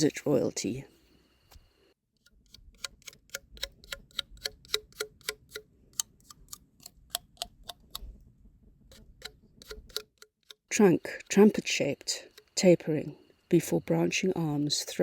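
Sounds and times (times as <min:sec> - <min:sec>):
clock-like ticking: 0:02.2 - 0:08.0, 0:08.9 - 0:12.7.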